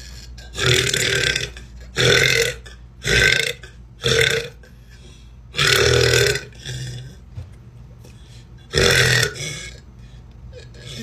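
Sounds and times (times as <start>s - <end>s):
woman belching: 0.4s - 4.6s, 5.6s - 7.1s, 8.7s - 9.8s.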